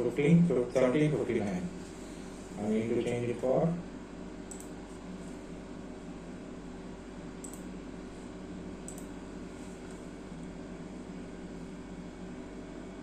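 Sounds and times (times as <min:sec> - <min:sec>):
electrical room hum: 0:00.0 - 0:13.0
faint computer mouse clicks: 0:04.5 - 0:04.8, 0:07.4 - 0:07.7, 0:08.9 - 0:09.1.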